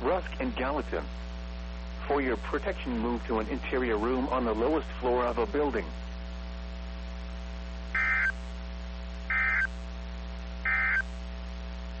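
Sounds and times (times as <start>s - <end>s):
steady low hum: 0.0s - 12.0s
digital data tone bursts: 7.9s - 8.4s, 9.3s - 9.7s, 10.6s - 11.1s.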